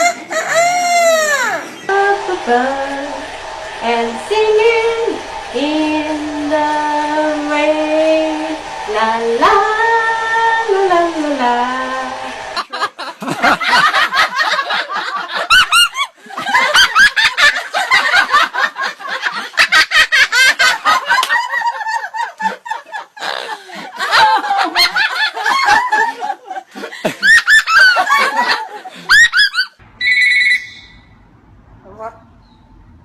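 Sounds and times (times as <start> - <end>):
loud laughter: 0.0 - 1.8, 12.6 - 29.8.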